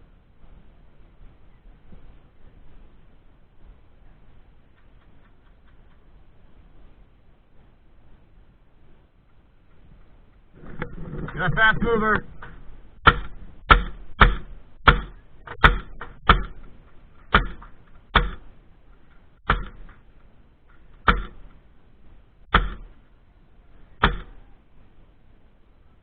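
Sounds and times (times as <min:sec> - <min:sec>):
airsoft gun firing single shots: 0:17.3 - 0:18.5, 0:22.5 - 0:23.0, 0:24.0 - 0:24.4.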